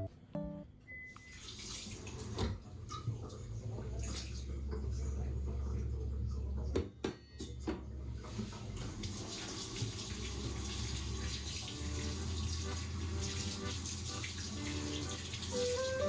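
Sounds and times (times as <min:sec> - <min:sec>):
tap water running into sink: 0:01.3 - 0:04.4, 0:08.3 - 0:16.0.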